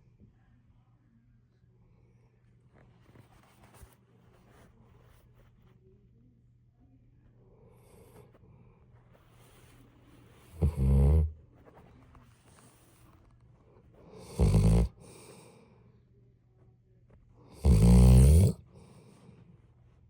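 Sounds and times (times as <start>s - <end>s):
quiet breathing: 0.0s - 20.0s
snoring: 10.5s - 11.4s, 14.1s - 15.6s, 17.5s - 19.0s.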